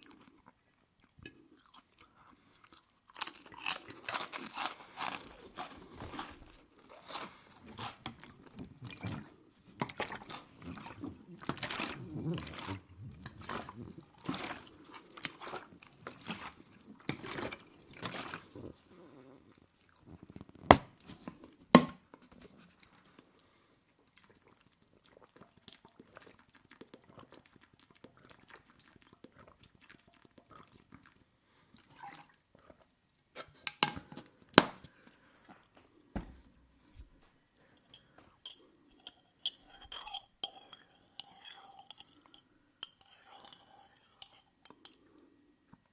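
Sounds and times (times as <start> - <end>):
wet chewing: 0.0 - 21.1, 22.8 - 31.3.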